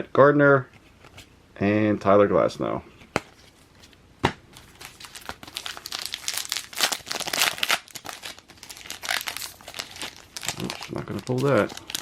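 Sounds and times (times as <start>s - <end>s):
wrapper crinkled and torn open: 4.6s - 12.0s.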